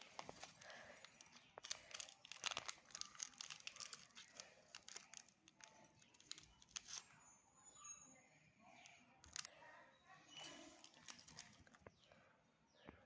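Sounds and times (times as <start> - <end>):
packaging crinkling: 0.0 - 7.2, 9.2 - 9.5, 10.4 - 11.9.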